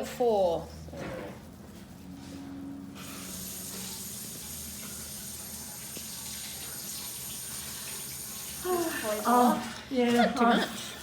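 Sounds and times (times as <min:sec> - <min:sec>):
water running from a tap: 0:03.0 - 0:11.0.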